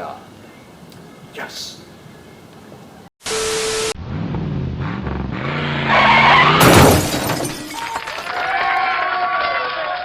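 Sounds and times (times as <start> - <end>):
car engine revving: 3.9 - 6.8
tyre squeal: 5.4 - 6.9.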